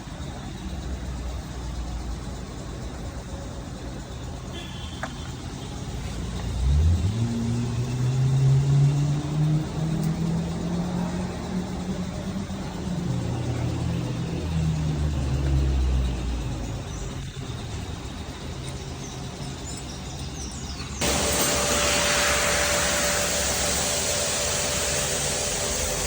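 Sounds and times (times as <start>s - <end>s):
car engine revving: 6.4s - 11.6s, 21.0s - 26.0s.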